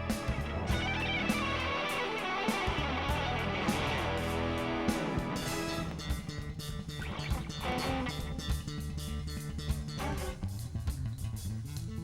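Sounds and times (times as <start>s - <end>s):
live rock band playing: 0.0s - 10.7s.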